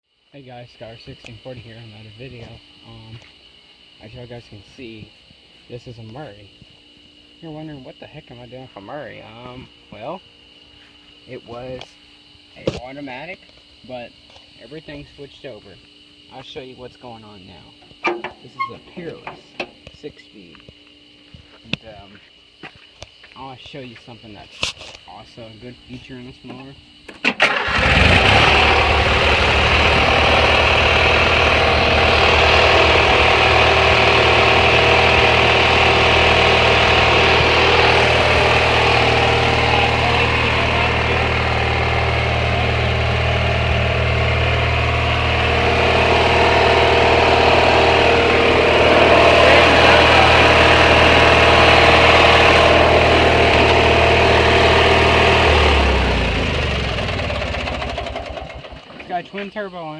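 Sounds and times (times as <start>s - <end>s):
lawn mower engine idling: 27.3s - 59.3s.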